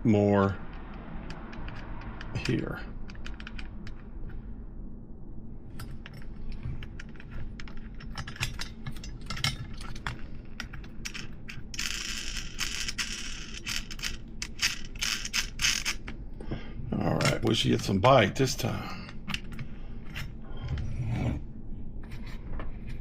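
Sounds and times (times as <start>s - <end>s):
small metal parts clinking: 5.8s - 16.1s
metal scraping: 20.1s - 23.0s.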